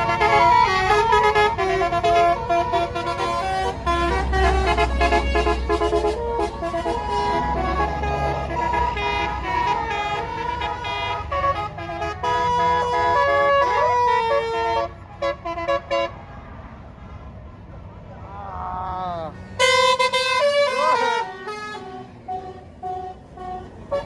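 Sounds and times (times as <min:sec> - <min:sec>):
musical air horn tune: 0:00.0 - 0:16.1
short horn blasts: 0:00.0 - 0:16.2, 0:19.5 - 0:24.0
bus engine rumble: 0:00.0 - 0:24.0.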